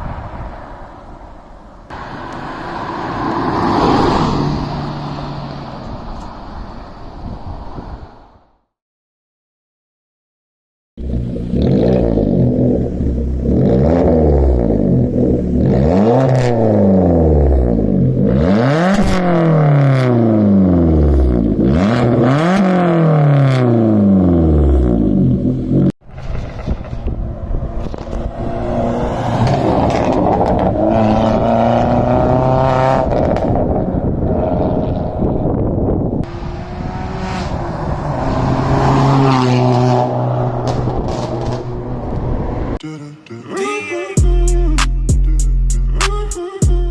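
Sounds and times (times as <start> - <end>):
engine revving through loud exhaust: 11.0 - 25.9, 28.2 - 35.2, 36.2 - 42.7
exhaust crackles and pops: 26.0 - 28.5.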